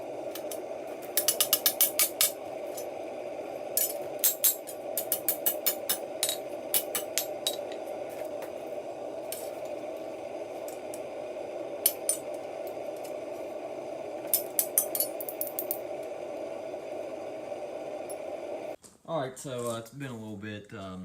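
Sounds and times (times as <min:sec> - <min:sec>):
steady hum: 0:00.0 - 0:18.8.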